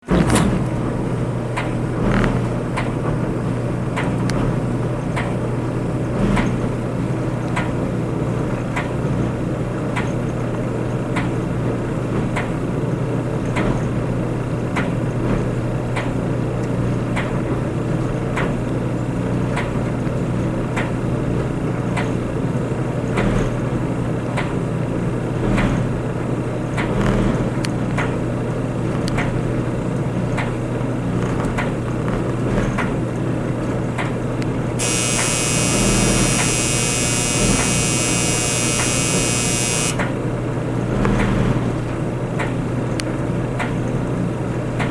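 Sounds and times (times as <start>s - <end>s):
clothes dryer humming: 34.8s - 40.0s.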